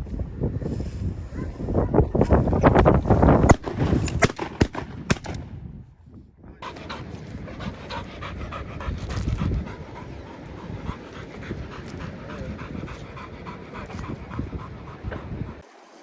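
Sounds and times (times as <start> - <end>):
wind on microphone: 0.0 - 15.7
dog panting: 6.6 - 15.7.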